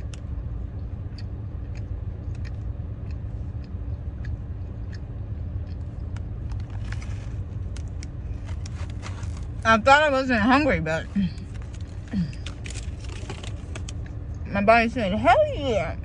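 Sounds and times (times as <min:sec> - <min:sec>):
person chewing and crunching: 0:00.0 - 0:09.6
car interior engine rumble: 0:00.0 - 0:16.0.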